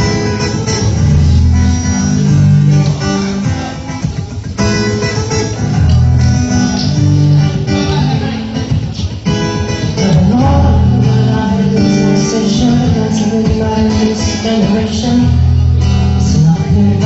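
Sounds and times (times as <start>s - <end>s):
low bass line: 0.0s - 3.3s, 5.6s - 8.4s, 10.0s - 13.8s, 15.1s - 17.0s
strummed and plucked guitars: 0.0s - 17.0s.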